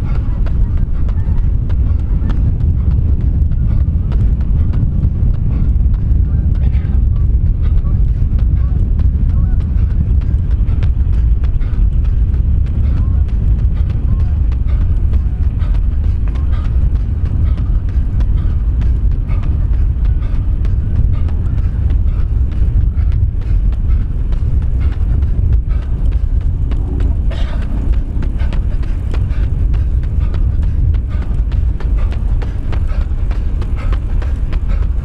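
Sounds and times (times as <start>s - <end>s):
wind rumble on microphone: 0.0s - 35.0s
runner's footfalls: 24.7s - 35.0s.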